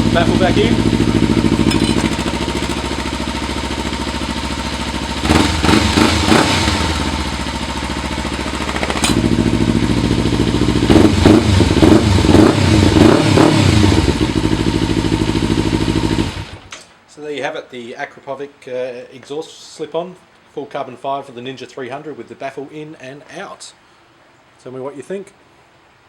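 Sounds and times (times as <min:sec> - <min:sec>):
motorcycle engine revving: 0:00.0 - 0:16.7.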